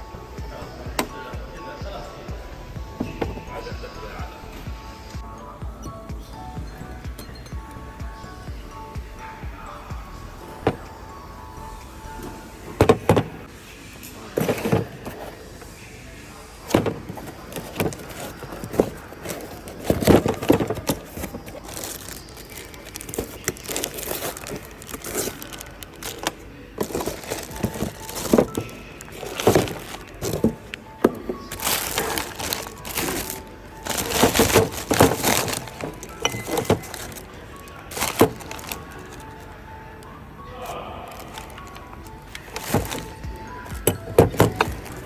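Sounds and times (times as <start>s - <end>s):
background music: 0.0s - 45.0s
hand tools clinking on metal: 5.0s - 9.1s, 16.7s - 39.4s, 41.2s - 45.0s.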